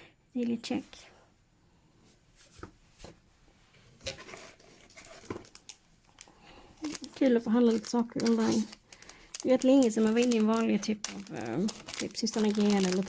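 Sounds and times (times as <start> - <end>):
paper rustling: 3.9 - 13.0.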